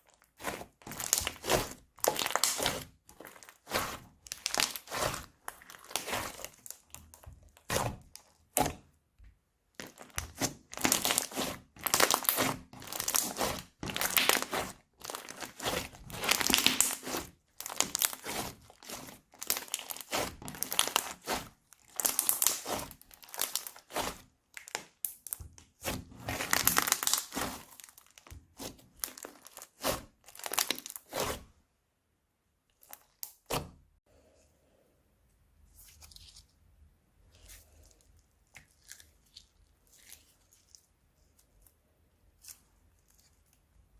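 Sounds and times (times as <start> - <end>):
plastic bags crinkling: 0.0 - 7.0, 9.8 - 24.8, 26.3 - 28.4, 29.0 - 31.1.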